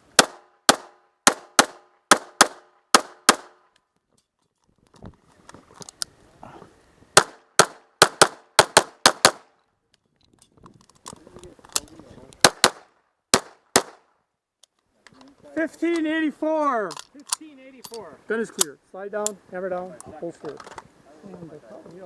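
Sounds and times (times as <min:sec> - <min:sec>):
pistol shots: 0:00.2 - 0:03.6, 0:07.2 - 0:09.5, 0:12.4 - 0:14.1.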